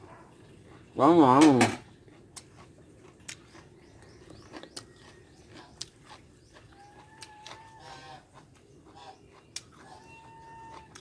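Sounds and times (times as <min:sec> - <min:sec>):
chewing and crunching food: 0:00.0 - 0:11.0
animal whining: 0:09.8 - 0:11.0.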